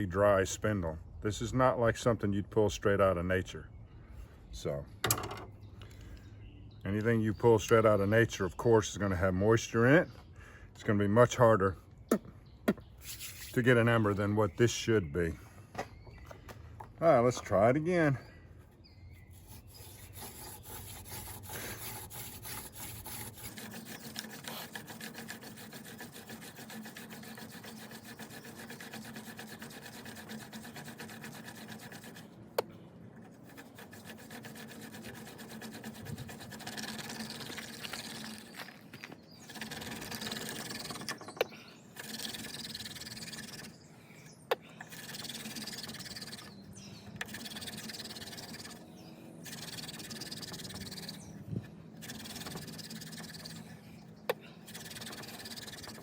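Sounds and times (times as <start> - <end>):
hand drill rasping on wood: 19.2 - 32.3, 33.2 - 43.8, 44.8 - 46.6, 47.2 - 48.8, 49.4 - 51.3, 52.0 - 53.8, 54.6 - 56.0.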